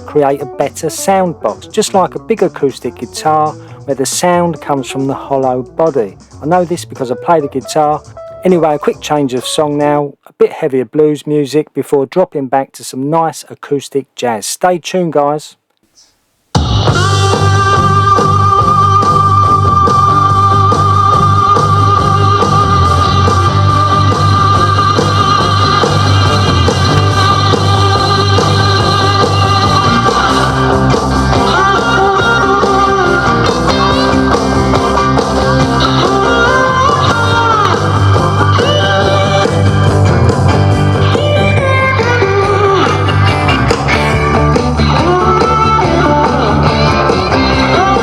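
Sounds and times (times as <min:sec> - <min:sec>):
blues song with singing and guitar: 0:16.6 - 0:48.0.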